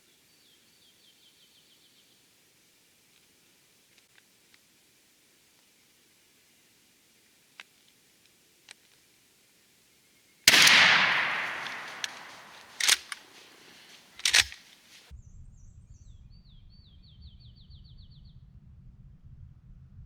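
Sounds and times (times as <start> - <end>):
shotgun shot echoing: 10.5 - 14.6.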